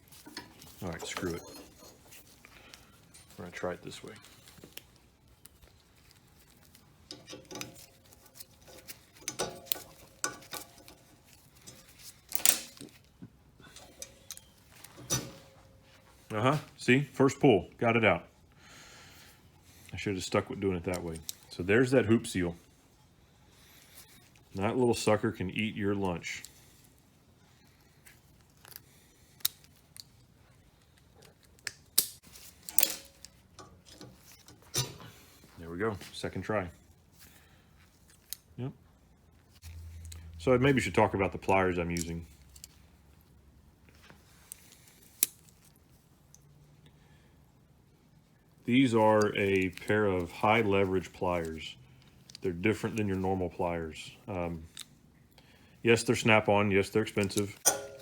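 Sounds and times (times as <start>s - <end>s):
hand tools clinking on metal: 0.1s - 4.6s, 7.0s - 16.0s, 32.0s - 35.5s, 57.2s - 58.0s
pliers clicking on metal: 6.7s - 13.0s, 13.6s - 15.4s, 31.3s - 35.1s, 57.2s - 58.0s
metal clack: 13.7s - 15.6s, 57.6s - 58.0s.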